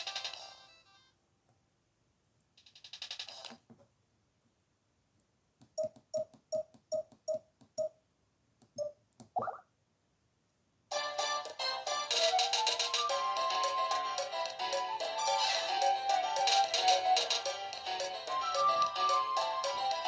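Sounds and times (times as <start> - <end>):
short beeps: 8.8 - 9.6.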